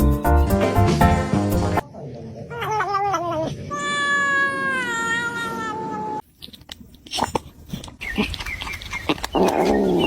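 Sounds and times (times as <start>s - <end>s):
cat meowing: 2.5s - 6.2s.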